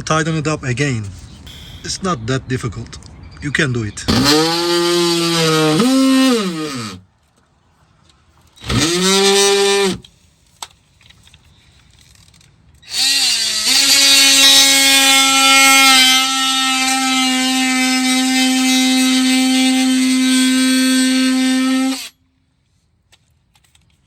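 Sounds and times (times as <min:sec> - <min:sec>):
power drill motor running: 0:08.6 - 0:10.0, 0:12.8 - 0:22.1.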